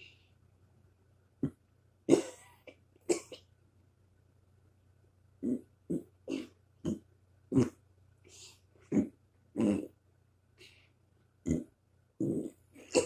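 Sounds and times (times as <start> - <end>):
short burps: 11.4 - 13.0.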